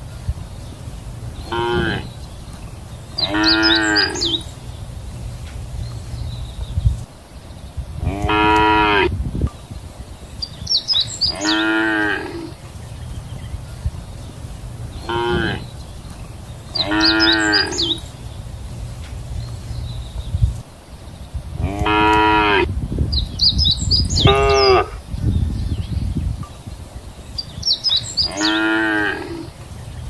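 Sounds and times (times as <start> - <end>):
cows mooing: 1.4 - 2.2, 3.2 - 4.6, 8.0 - 9.1, 11.2 - 12.6, 15.0 - 15.8, 16.7 - 18.2, 21.6 - 22.7, 24.2 - 25.0, 28.2 - 29.6.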